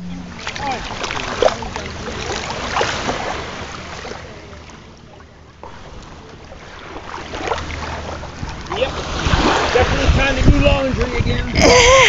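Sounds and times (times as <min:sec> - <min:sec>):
beach surf: 0:00.0 - 0:12.0
wind on the microphone: 0:08.3 - 0:12.0.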